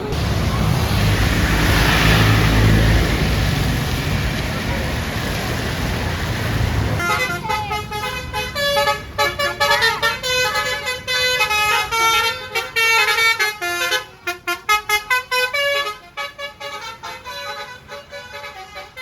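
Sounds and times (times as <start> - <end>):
multi-note bus air horn: 7.0 - 19.0.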